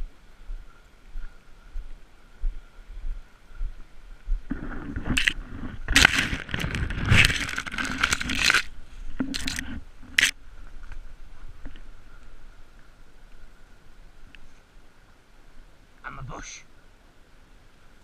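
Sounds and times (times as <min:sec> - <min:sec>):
leaves and branches rustling: 0:00.0 - 0:18.0
sharp cracks of branches: 0:04.5 - 0:10.4.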